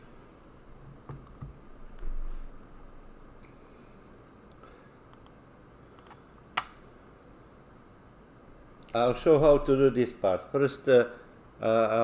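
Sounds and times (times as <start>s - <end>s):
low room noise: 0.0s - 12.0s
computer mouse clicks: 5.1s - 5.4s, 6.0s - 6.8s.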